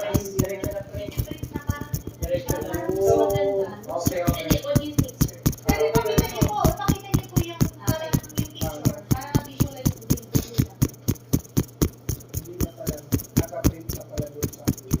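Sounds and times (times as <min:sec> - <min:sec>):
music with fast percussive beat: 0:00.0 - 0:15.0.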